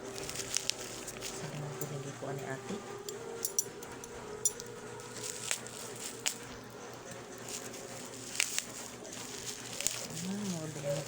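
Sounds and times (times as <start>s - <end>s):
faint background hum: 0.0s - 11.0s
packaging clicks and taps: 0.1s - 1.9s, 4.5s - 11.0s.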